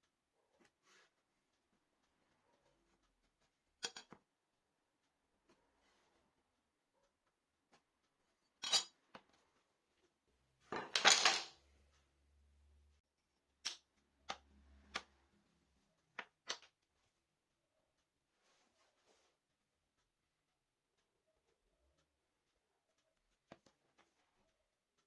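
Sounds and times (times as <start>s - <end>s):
tools clattering: 8.6s - 8.9s, 10.7s - 11.6s.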